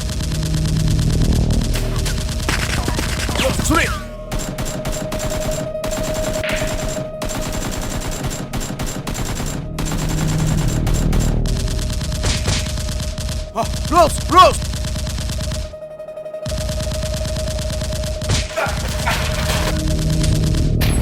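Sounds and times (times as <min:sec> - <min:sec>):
rapid toy gunfire bursts: 0:02.1 - 0:15.7.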